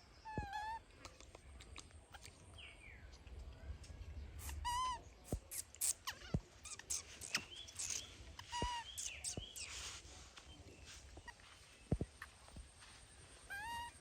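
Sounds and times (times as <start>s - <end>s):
baby monkey squeaking: 0.2s - 0.9s, 4.4s - 10.0s, 13.4s - 14.0s.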